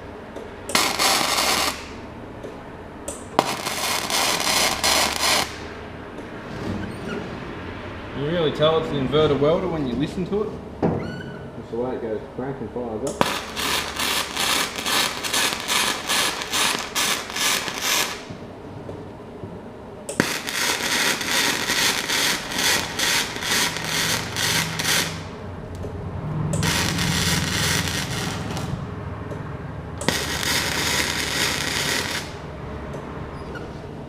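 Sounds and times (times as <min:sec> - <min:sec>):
welding arc crackling: 0:00.7 - 0:02.0, 0:03.1 - 0:05.7, 0:13.2 - 0:18.4, 0:20.1 - 0:25.4, 0:26.5 - 0:28.9, 0:30.0 - 0:32.5.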